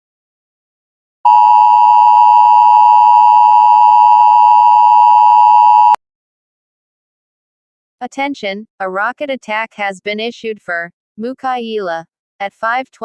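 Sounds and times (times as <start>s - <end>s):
two-pitch alarm tone: 1.3s - 6.0s.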